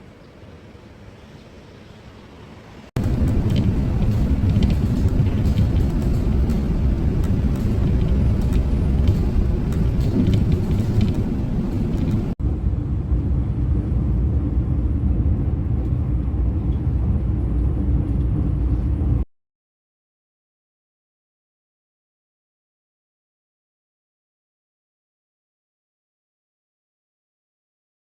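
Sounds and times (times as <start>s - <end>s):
loud low rumble: 3.0s - 19.2s.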